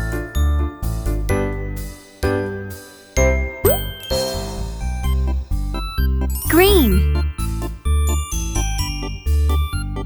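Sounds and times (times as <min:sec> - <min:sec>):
upbeat children's music: 0:06.5 - 0:07.0.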